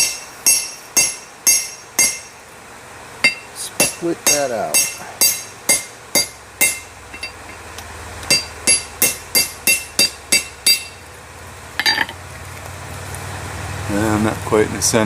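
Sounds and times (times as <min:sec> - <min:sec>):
hammer striking wedge on metal: 0:00.0 - 0:02.4, 0:03.2 - 0:11.0, 0:11.8 - 0:12.2.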